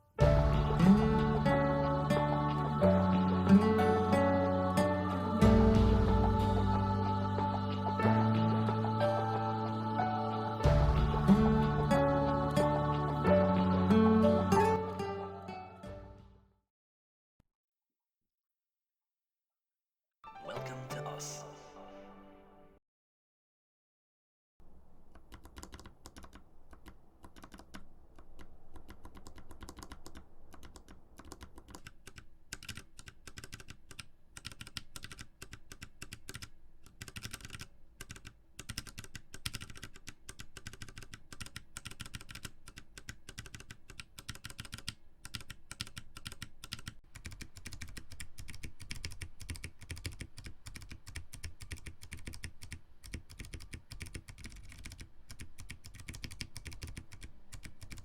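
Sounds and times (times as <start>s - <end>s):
mechanical keyboard key clacks: 25.1s - 58.0s.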